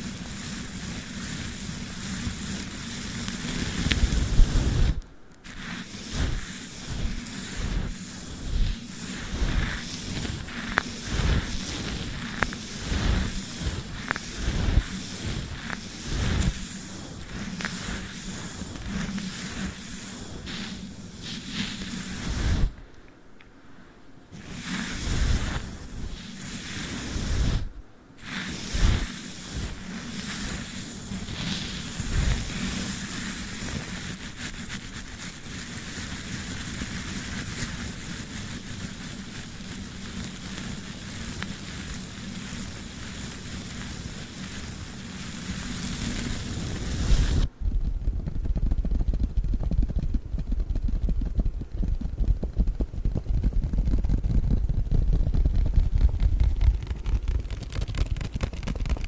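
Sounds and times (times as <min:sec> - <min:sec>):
tape and brush crackling on microphone: 0:00.0 - 0:23.2, 0:24.3 - 0:59.0.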